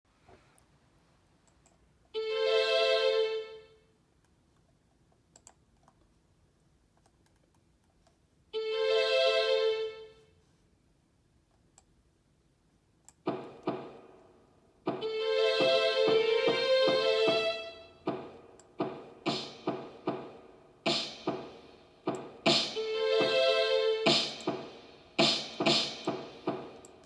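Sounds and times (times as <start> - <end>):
long held instrument notes: 2.2 - 3.8, 8.6 - 10.2, 15.0 - 18.0, 22.5 - 24.8
short struck notes: 14.9 - 27.0.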